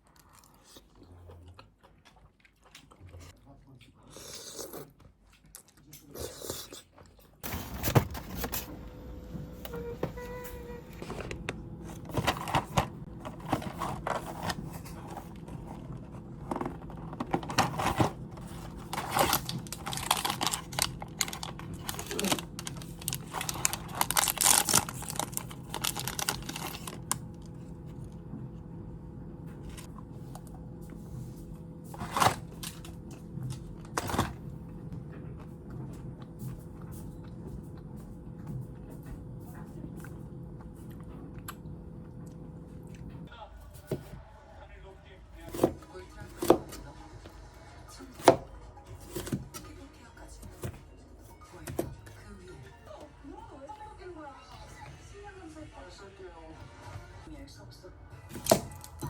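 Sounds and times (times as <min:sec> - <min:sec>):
food packaging crinkling and tearing: 0:10.2 - 0:28.0.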